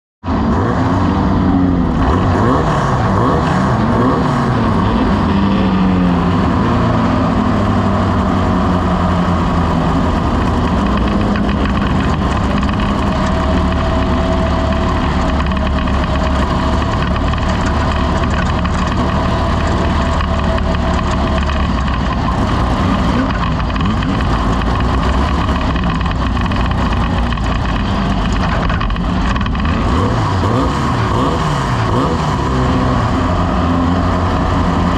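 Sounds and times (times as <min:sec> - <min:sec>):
loud rumble and rattle: 0:00.2 - 0:34.9
race vehicle engine running hard: 0:00.2 - 0:34.9.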